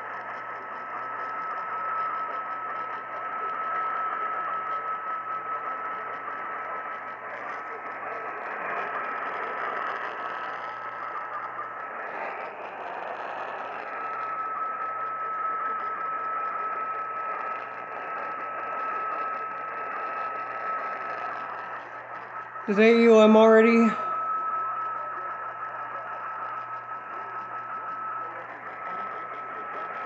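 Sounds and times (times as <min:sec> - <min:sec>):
thin steady whistle: 0:00.0 - 0:22.8, 0:24.0 - 0:30.0
radio static and hiss: 0:00.2 - 0:30.0.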